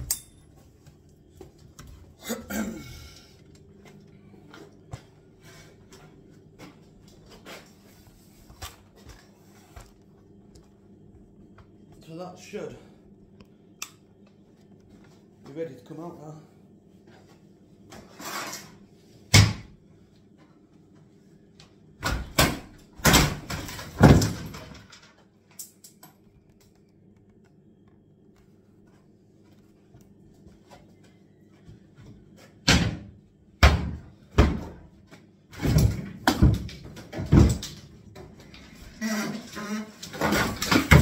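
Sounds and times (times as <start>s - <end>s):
faint steady hum: 0.0s - 41.0s
wooden unit knocking and banging: 35.5s - 38.3s, 39.4s - 41.0s.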